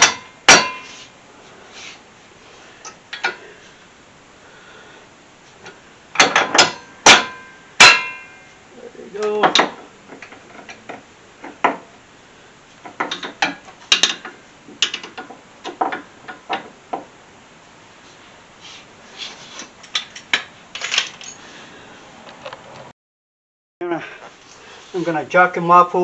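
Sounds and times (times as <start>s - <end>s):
metal tools clinking: 19.8s - 21.5s.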